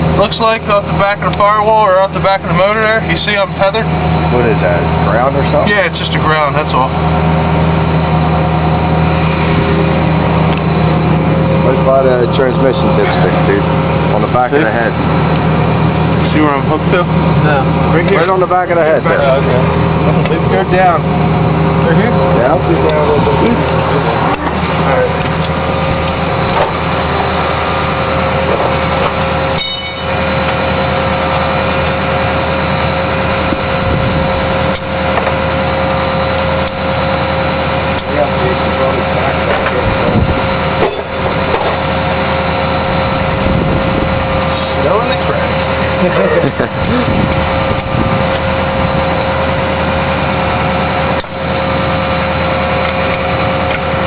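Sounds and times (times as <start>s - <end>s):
motor whining: 1.3s - 54.0s
high squeak: 29.6s - 30.2s, 40.8s - 41.8s.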